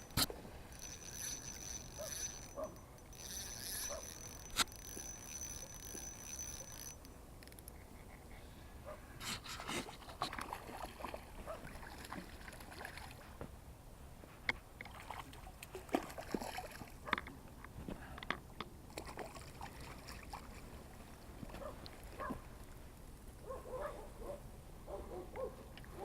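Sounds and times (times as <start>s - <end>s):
water sloshing and splashing: 9.6s - 13.4s, 14.8s - 17.1s, 18.9s - 22.5s.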